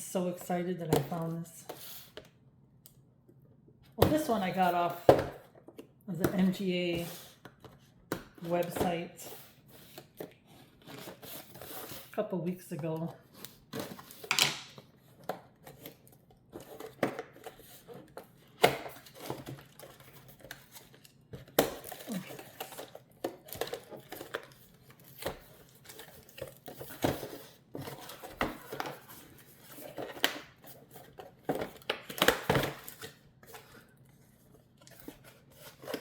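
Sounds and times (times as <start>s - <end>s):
wrapping crinkling and tearing: 15.6s - 36.0s.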